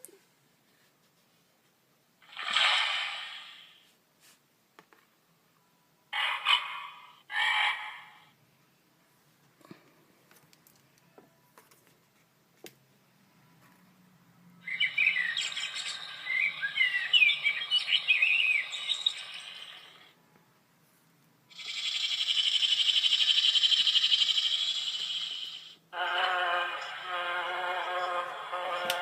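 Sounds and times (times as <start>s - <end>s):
birds chirping and singing: 14.6s - 20.1s, 21.5s - 25.6s.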